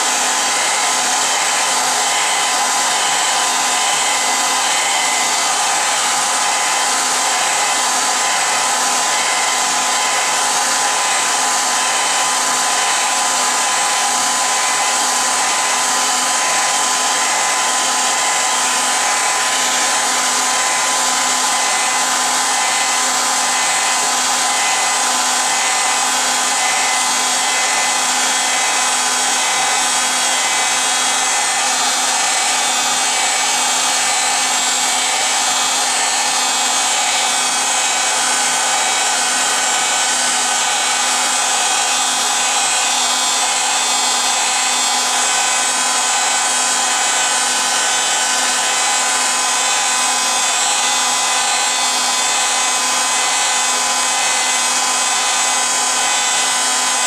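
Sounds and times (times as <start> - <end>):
electric blower rushing: 0.0 - 57.0.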